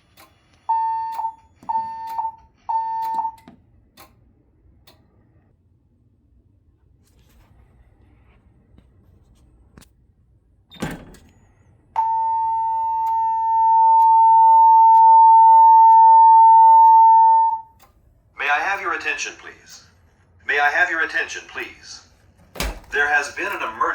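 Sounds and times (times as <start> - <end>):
click: 0.2 - 4.2, 4.8 - 5.1
fire alarm alert tone: 0.7 - 3.4, 12.0 - 17.8.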